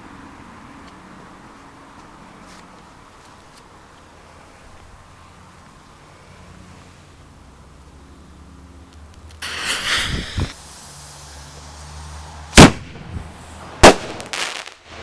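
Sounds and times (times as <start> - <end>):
firework bangs: 9.4 - 15.0
firework hissing whoosh: 9.4 - 15.0.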